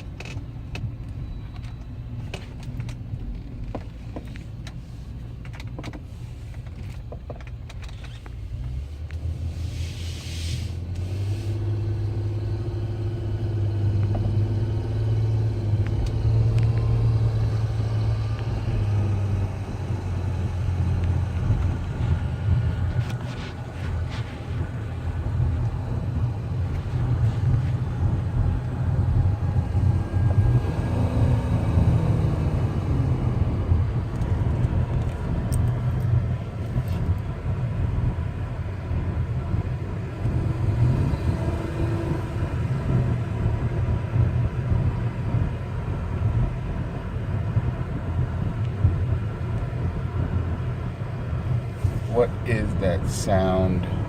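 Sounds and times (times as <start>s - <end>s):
car low rumble: 0.0s - 54.0s.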